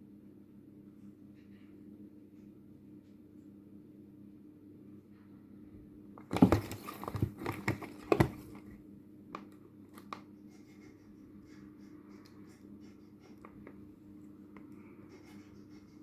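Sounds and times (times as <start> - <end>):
rustling and crinkling: 6.2 - 8.8.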